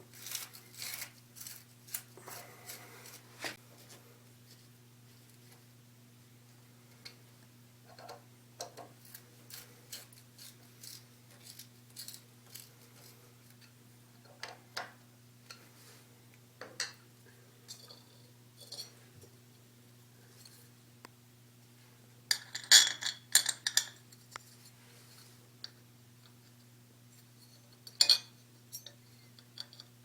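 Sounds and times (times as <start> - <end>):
light clicks taps and scrapes: 23.7 - 28.0.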